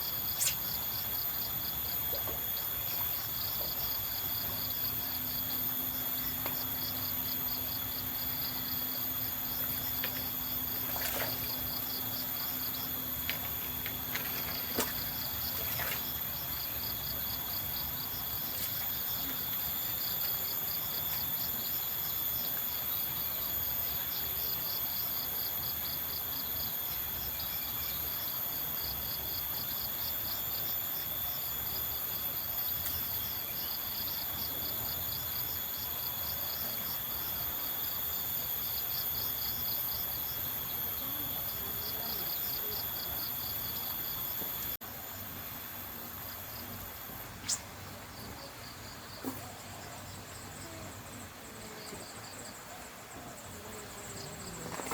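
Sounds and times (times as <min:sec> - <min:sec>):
faint low hum: 0:00.0 - 0:37.6
high-pitched insect drone: 0:00.0 - 0:49.6
crickets chirping: 0:00.0 - 0:54.9.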